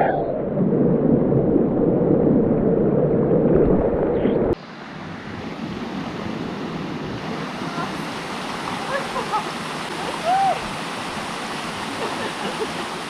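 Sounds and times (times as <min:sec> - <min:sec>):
waterfall rushing: 0:04.6 - 0:13.0.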